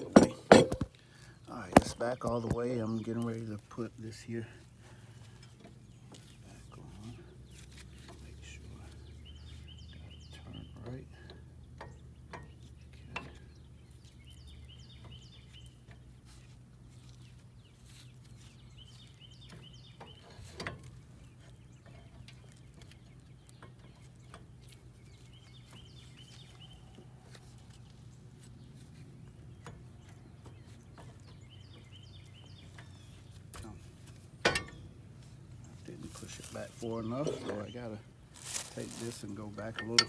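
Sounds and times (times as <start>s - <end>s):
bird calling: 35.6s - 40.0s.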